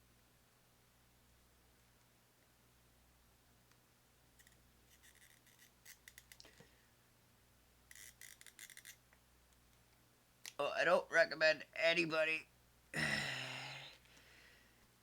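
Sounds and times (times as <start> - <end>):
small hand tools clicking: 7.9 - 9.0.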